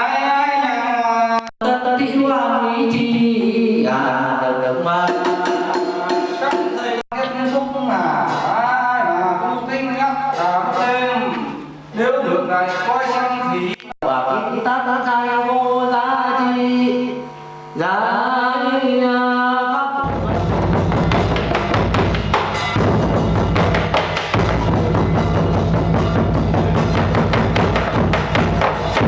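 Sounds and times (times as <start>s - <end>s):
fast dense drumming: 20.1s - 29.0s.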